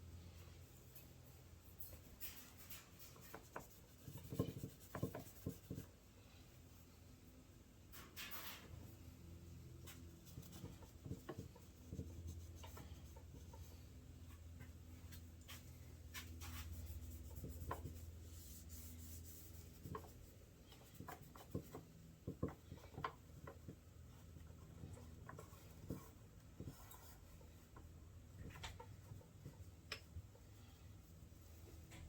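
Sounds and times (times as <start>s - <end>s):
light clicks and taps: 19.8s - 30.4s.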